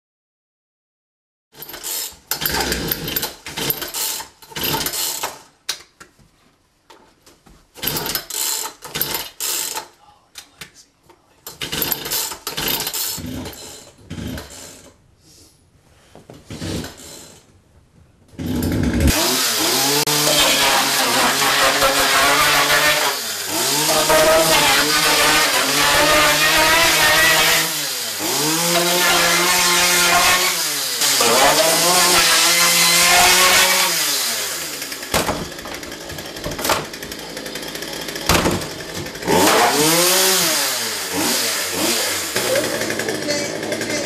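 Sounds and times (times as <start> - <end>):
chainsaw revving: 1.6 - 5.2, 11.6 - 14.9, 16.5 - 17.4, 18.4 - 44.0.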